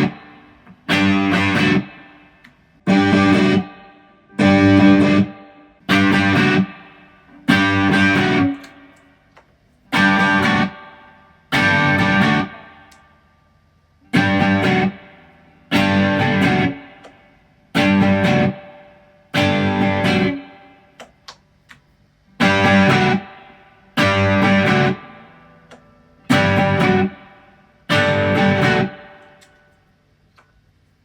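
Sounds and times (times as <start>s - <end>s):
electric guitar chords: 0.0s - 9.2s, 9.8s - 13.2s, 14.0s - 30.2s
faint guitar string clicks: 25.6s - 25.9s.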